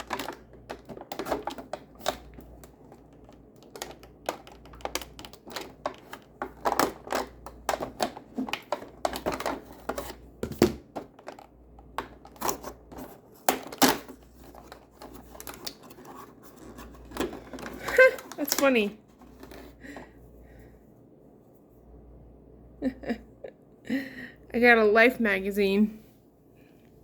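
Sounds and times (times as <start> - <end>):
cardboard packaging handled: 12.2 - 18.6.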